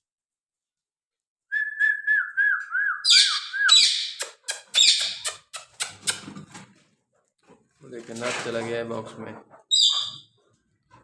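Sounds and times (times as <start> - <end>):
parakeet whistled notes: 1.6 - 4.2
parakeet harsh squawks: 3.1 - 6.3.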